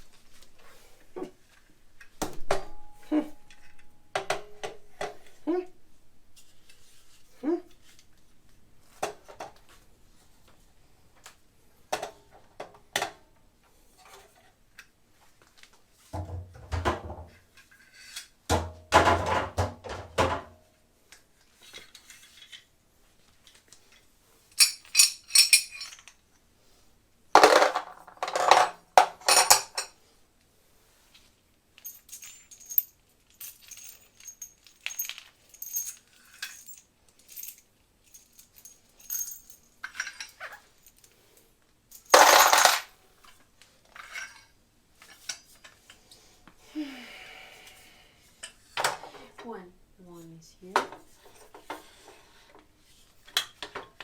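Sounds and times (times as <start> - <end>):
metal parts clinking: 24.5 - 26.2, 31.8 - 41.2, 41.9 - 42.9.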